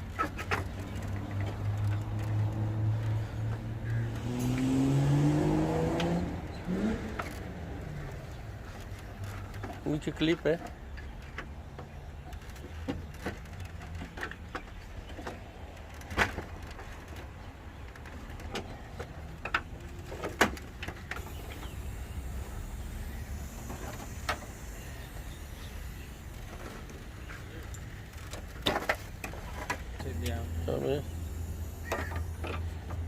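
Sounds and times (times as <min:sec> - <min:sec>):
steady low hum: 0:21.2 - 0:33.0.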